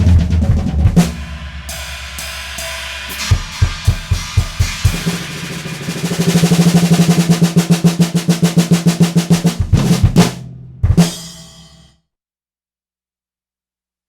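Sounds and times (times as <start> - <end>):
accented drum hit ringing: 0.0 - 11.8
drum roll: 0.0 - 11.9
bass drum hits: 9.3 - 11.4.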